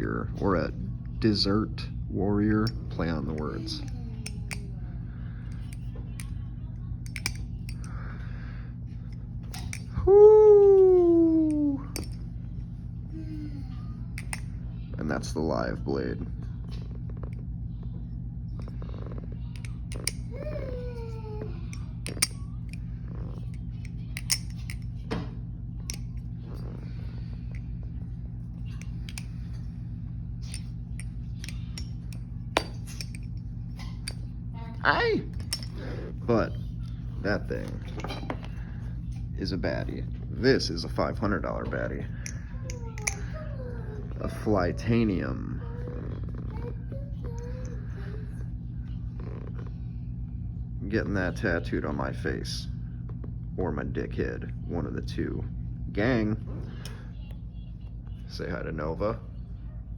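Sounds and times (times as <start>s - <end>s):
steady low hum: 0.0s - 59.9s
butterfly knife clicking: 3.4s - 4.7s, 7.0s - 7.9s, 9.5s - 9.9s, 14.2s - 14.5s, 19.5s - 20.3s, 21.7s - 22.8s, 23.5s - 25.0s, 25.9s - 26.3s, 28.7s - 29.6s, 30.4s - 33.4s, 42.2s - 43.3s.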